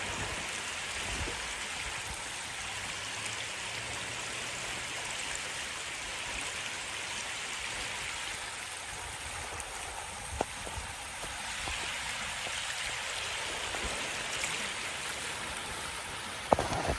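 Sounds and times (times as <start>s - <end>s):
flowing river water: 0.0s - 16.9s.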